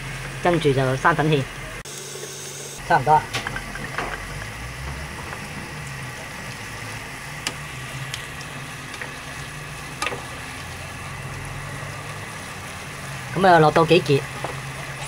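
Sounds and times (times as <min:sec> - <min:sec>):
sauce sizzling in a pan: 0:00.1 - 0:15.0
utensil clicking against pan: 0:09.9 - 0:10.7.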